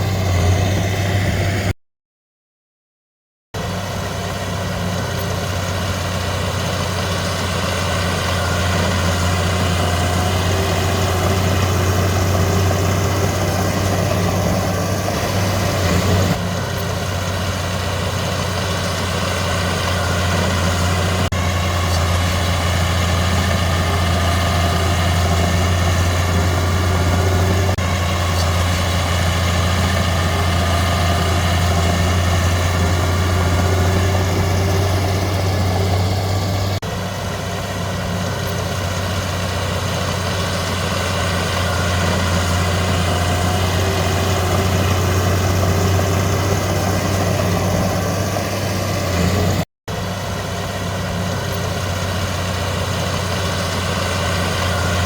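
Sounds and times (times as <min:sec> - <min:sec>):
heavy diesel engine droning: 0:00.0 - 0:01.8, 0:03.6 - 0:55.0.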